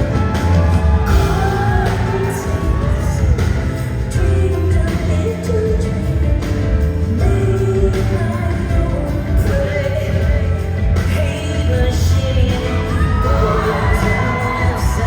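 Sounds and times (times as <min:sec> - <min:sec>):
live band playing: 0:00.0 - 0:15.0
steady bass line: 0:00.0 - 0:15.0
woman singing: 0:00.0 - 0:15.0.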